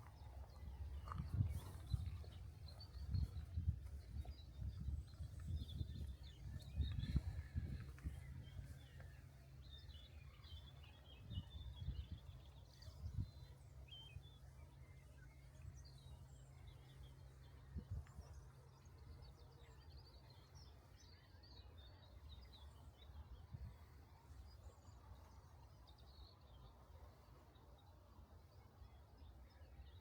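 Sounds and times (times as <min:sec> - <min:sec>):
small birds chirping: 0:00.0 - 0:23.3.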